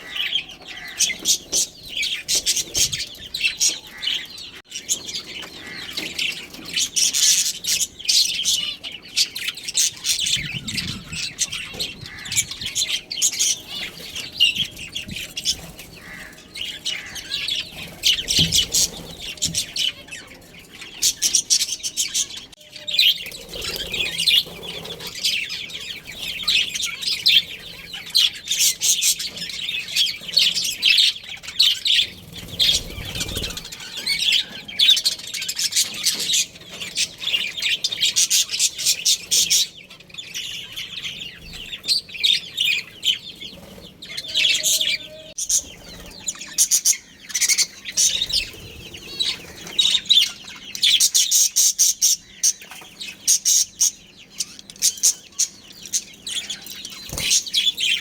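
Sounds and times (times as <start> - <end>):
budgerigars chirping: 0.0 - 58.0.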